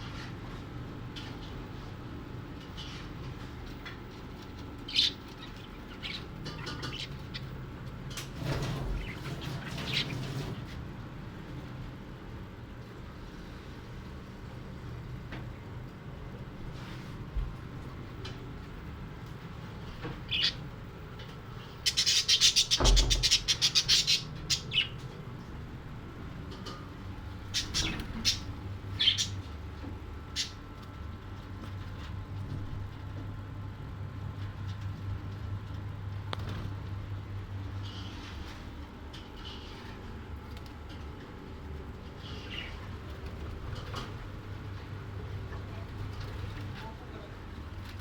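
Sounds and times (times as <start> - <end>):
parrot chirping: 21.8 - 25.0, 27.5 - 29.4.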